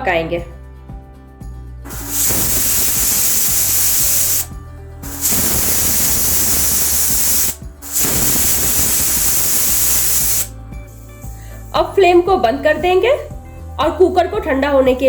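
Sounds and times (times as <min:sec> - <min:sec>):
pressure cooker whistling: 0:01.9 - 0:10.5.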